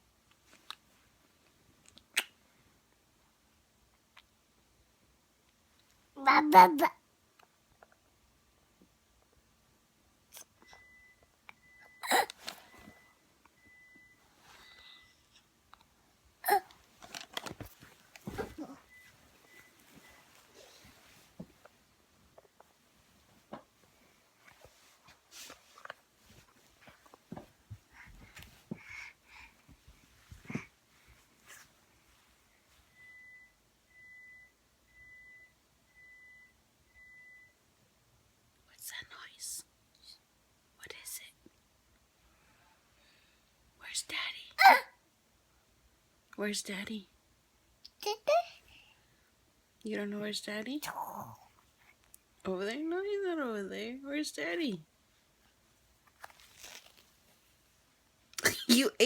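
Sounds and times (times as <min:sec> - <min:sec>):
microwave oven beeping: 0:33.0 - 0:37.6.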